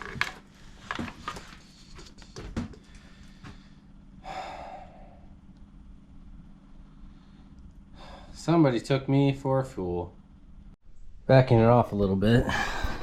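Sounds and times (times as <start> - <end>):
person sighing: 12.3 - 13.0.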